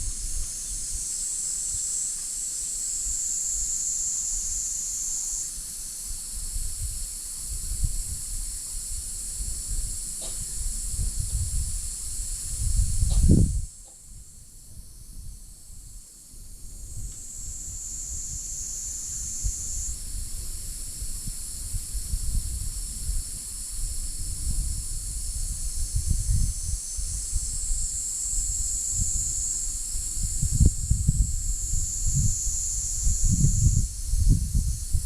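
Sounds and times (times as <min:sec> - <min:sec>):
insect chorus shrilling: 0:00.0 - 0:15.8, 0:16.7 - 0:35.0
wind buffeting microphone: 0:06.5 - 0:13.7, 0:16.5 - 0:35.0.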